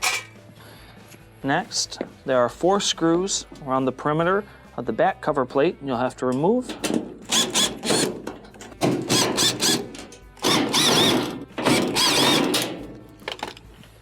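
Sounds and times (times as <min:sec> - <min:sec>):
power screwdriver running: 0:07.3 - 0:08.2, 0:09.1 - 0:12.6.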